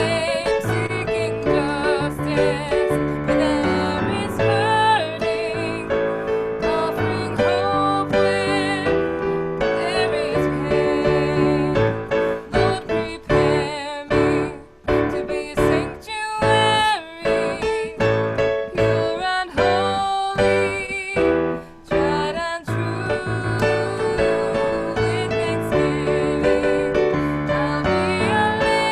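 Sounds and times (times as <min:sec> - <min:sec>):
person singing with vibrato: 0:00.0 - 0:28.9
piano accompaniment: 0:00.0 - 0:28.9.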